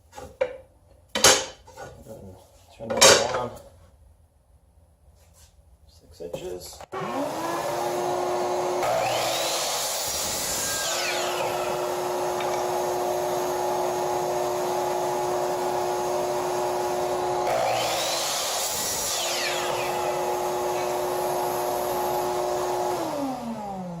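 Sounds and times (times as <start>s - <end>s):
power tool motor whining: 6.9s - 24.0s
saw cutting wood: 6.9s - 24.0s.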